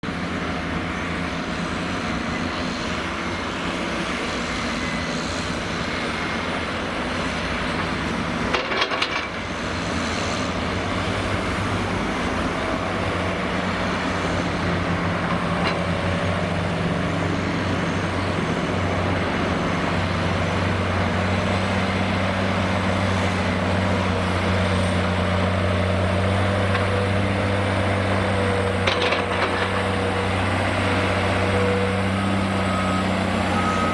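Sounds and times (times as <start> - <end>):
heavy diesel machinery working: 0.0 - 33.9
clatter of knocks: 8.5 - 9.3, 28.8 - 29.8.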